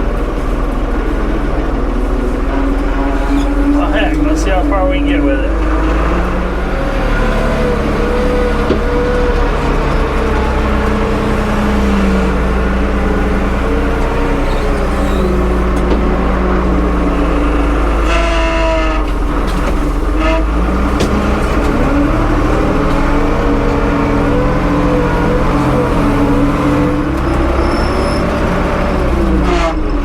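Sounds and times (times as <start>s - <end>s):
tractor engine running: 0.0s - 30.0s
high squeal: 13.6s - 15.7s, 24.3s - 28.9s.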